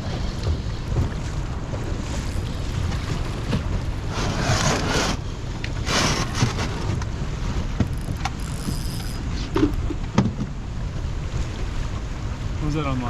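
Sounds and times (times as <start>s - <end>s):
light knocks from boat: 0.0s - 4.0s, 5.6s - 10.7s
wind rumbling on microphone: 0.0s - 13.0s.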